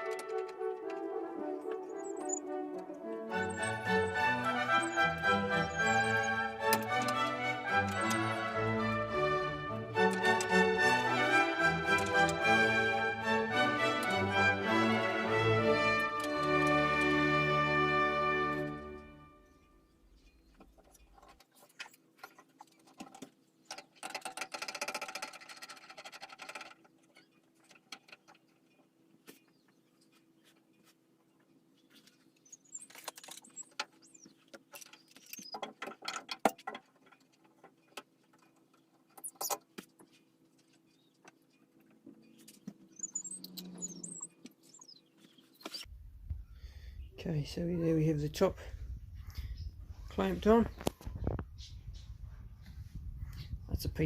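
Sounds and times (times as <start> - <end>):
clamps rattling: 3.3 - 13.0, 20.6 - 28.8, 32.9 - 40.8
metal clamps clicking and clinking: 3.4 - 8.7.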